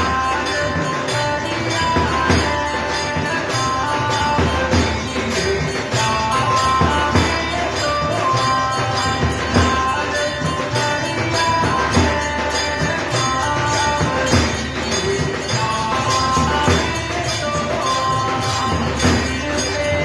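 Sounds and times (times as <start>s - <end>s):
percussion beat: 0.0s - 20.0s.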